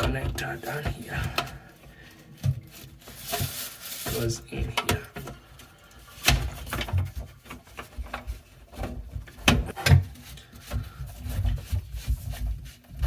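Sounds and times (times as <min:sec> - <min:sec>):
sink drain parts knocking and clicking: 0:04.6 - 0:05.6.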